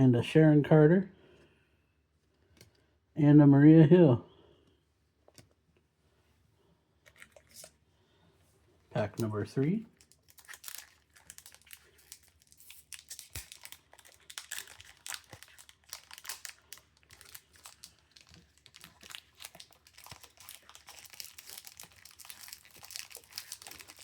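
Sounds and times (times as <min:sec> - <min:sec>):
wrapper tearing and crinkling: 0:09.9 - 0:24.0.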